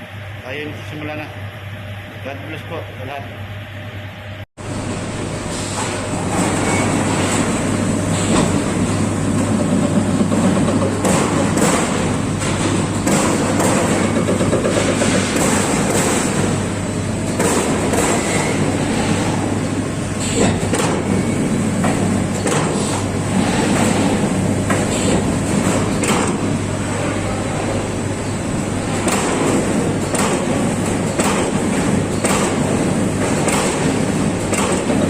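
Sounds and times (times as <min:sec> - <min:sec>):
machine hum: 0:00.0 - 0:35.0
punch striking sheet metal: 0:17.3 - 0:18.6, 0:29.0 - 0:35.0.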